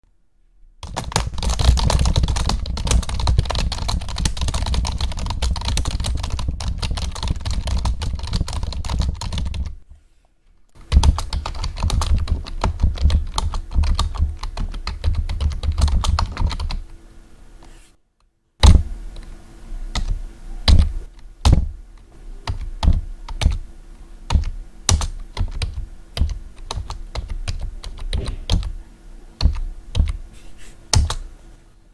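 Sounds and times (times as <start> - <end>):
typing on computer keyboard: 0.8 - 9.8, 10.8 - 16.9, 19.9 - 23.6, 24.3 - 28.8, 29.4 - 30.2, 30.9 - 31.3.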